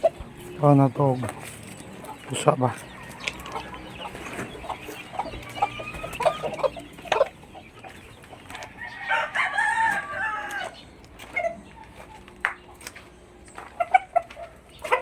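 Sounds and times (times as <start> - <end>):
chickens clucking: 0.0 - 15.0
rooster crowing: 8.5 - 10.8.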